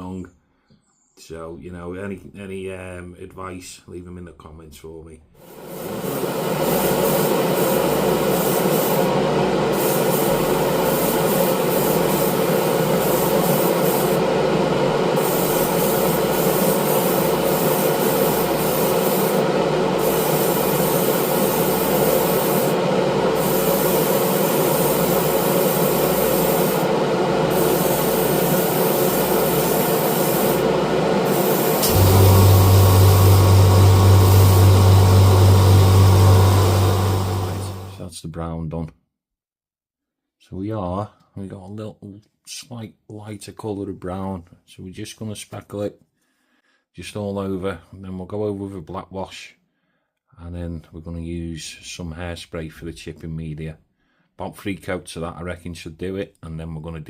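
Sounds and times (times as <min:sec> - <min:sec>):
airbrush spraying hiss: 0:05.4 - 0:38.0
compressor motor hum: 0:05.4 - 0:38.0
deep loud hum: 0:26.1 - 0:38.0.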